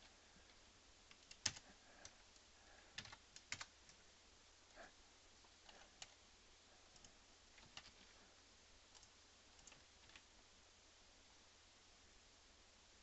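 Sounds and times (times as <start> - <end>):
computer keyboard and mouse clicks: 1.1 - 4.0, 7.0 - 8.1, 8.9 - 10.3.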